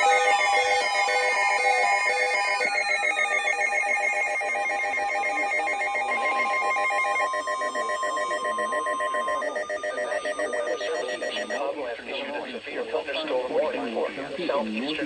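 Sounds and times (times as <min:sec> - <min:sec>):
pulsing electronic tone: 0:00.0 - 0:11.6
steady single tone: 0:02.0 - 0:11.6.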